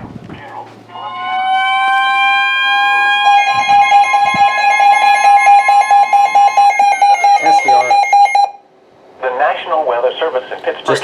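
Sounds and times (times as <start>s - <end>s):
steady loud alarm tone: 1.0s - 8.6s
lower alert tone beeping: 3.2s - 8.6s.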